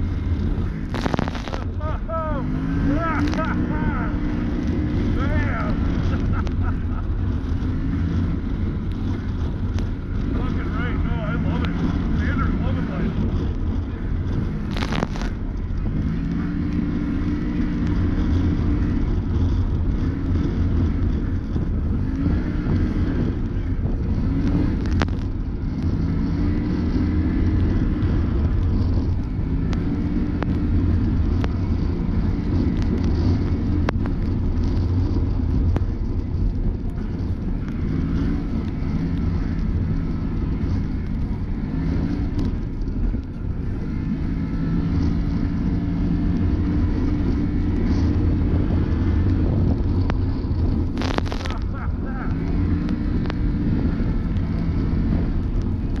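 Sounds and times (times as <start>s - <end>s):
side-by-side engine revving: 0.0s - 56.0s.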